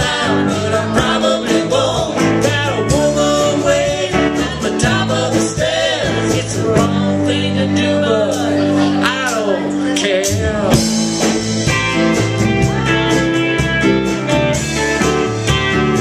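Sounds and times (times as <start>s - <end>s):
person singing: 0.0s - 11.0s
acoustic guitar strumming: 0.0s - 16.0s.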